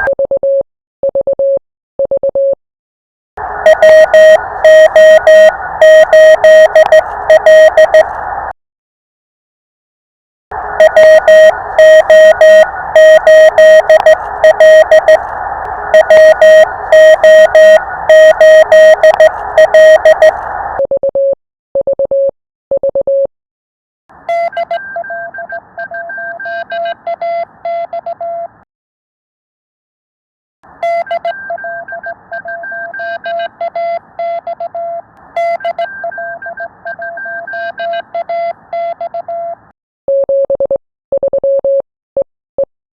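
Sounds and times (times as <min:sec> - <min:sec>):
radio receiver hiss: 0:03.4 - 0:08.5, 0:10.6 - 0:20.8
morse code tone keying: 0:03.6 - 0:08.1, 0:10.8 - 0:15.2, 0:15.9 - 0:20.4.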